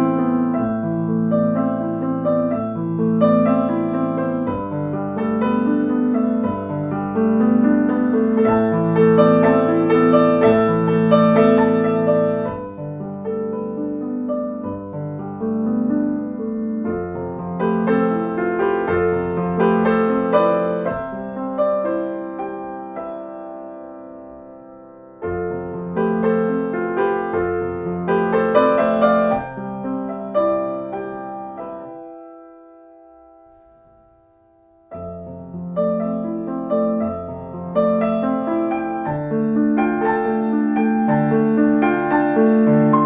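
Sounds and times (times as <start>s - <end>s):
slow solo piano: 0.0s - 43.0s.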